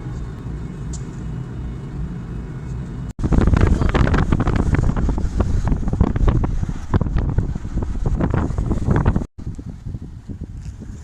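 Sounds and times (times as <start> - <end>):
low steady rumble: 0.0 - 11.0
wind buffeting microphone: 3.2 - 11.0.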